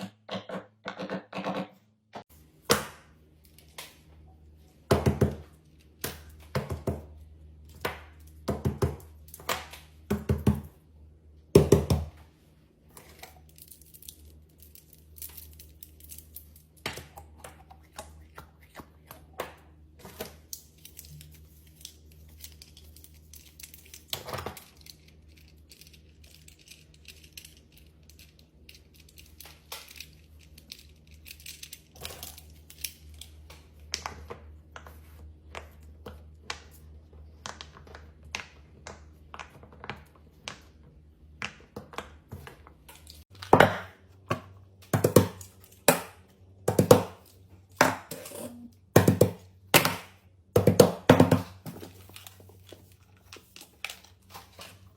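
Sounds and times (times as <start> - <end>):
crafting materials crinkling: 12.8 - 41.2, 51.5 - 54.9.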